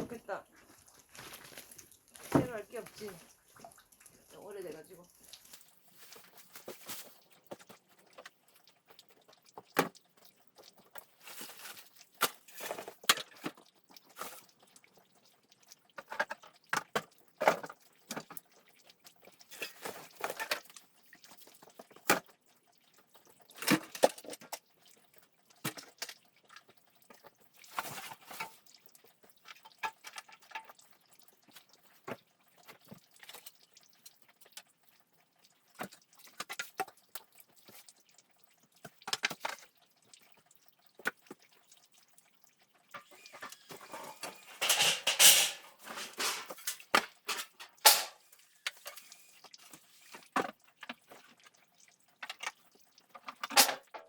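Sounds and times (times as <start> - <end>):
wood and debris knocking and scraping: 1.1 - 3.2, 43.0 - 48.2.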